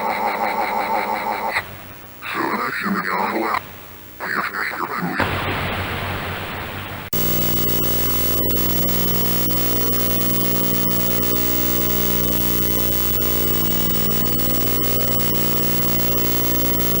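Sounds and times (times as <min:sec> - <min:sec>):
harsh electronic buzzing drone: 0:07.1 - 0:17.0.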